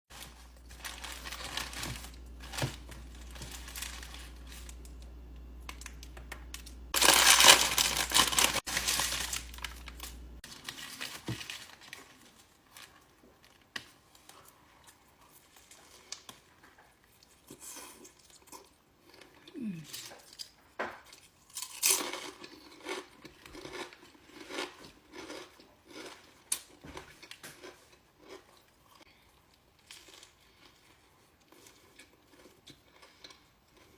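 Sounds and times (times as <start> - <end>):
paper wrapper crinkling and tearing: 0.1 - 14.5.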